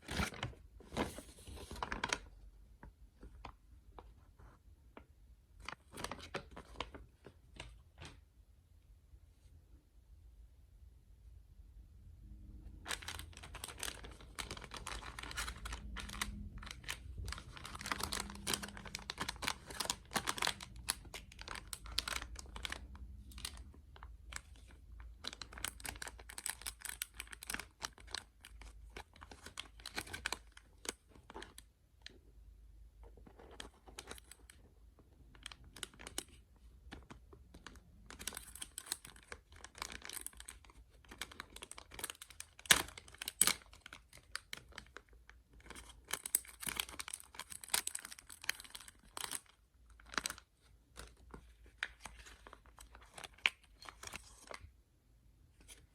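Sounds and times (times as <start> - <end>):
packaging crinkling and tearing: 0.0 - 2.4, 12.8 - 32.2, 33.2 - 34.6, 35.2 - 54.7.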